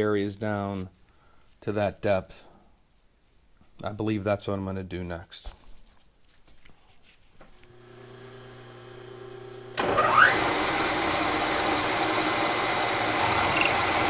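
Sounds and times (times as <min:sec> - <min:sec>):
milling machine humming: 0:07.7 - 0:14.0
end mill cutting metal: 0:07.8 - 0:14.0.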